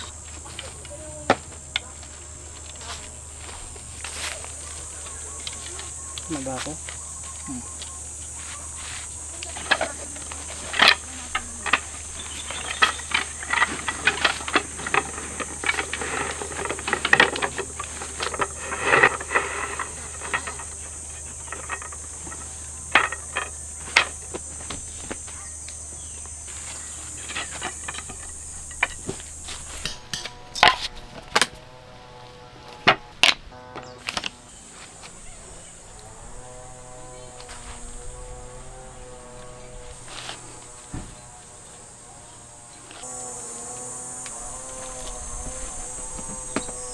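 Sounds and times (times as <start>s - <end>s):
knocks clicks and clatter: 0.0s - 31.6s
high insect drone: 0.0s - 46.9s.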